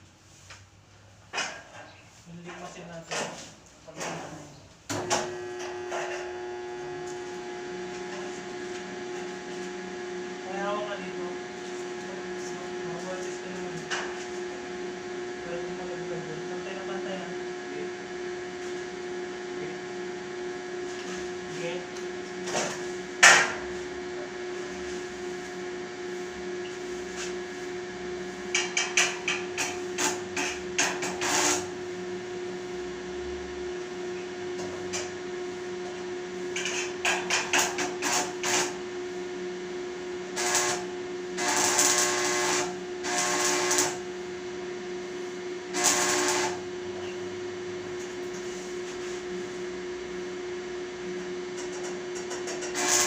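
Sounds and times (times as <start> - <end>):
welding machine humming: 4.9 - 53.0
arc welding crackle: 5.2 - 14.6, 24.6 - 31.9, 36.3 - 44.5, 45.1 - 47.0, 51.6 - 53.0.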